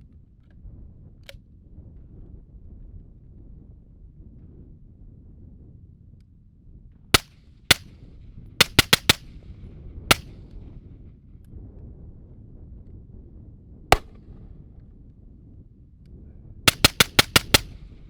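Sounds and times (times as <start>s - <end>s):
suppressed rifle shots: 7.2s - 7.9s, 8.6s - 9.3s, 10.1s - 10.4s, 14.0s - 14.4s, 16.7s - 18.0s.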